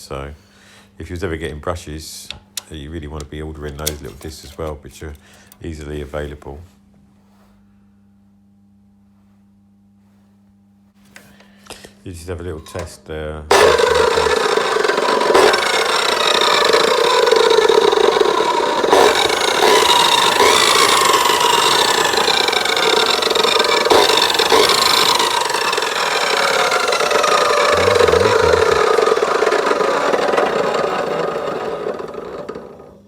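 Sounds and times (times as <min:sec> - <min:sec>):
chop saw motor running: 0:13.5 - 0:33.0.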